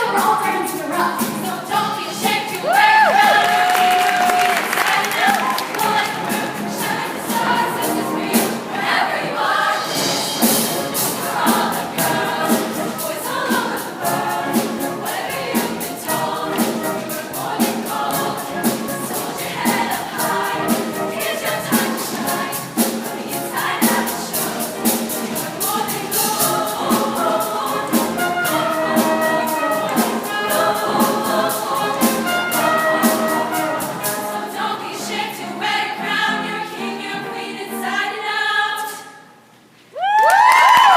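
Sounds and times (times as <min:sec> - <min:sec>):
girls choir singing: 0:00.0 - 0:39.4
instrumental backing with beat: 0:09.8 - 0:34.5.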